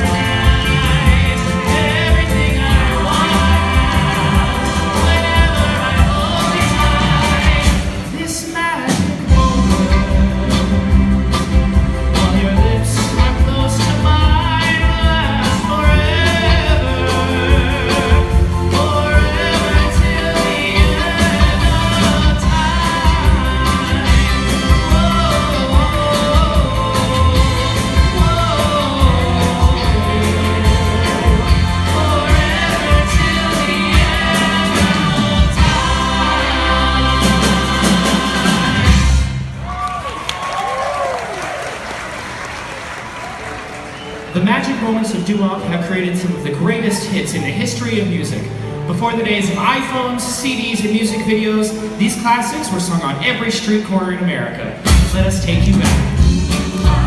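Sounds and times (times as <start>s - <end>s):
vocal group singing in harmony: 0.0s - 8.5s, 14.8s - 39.5s
rock and roll band: 0.0s - 53.8s, 54.4s - 57.0s.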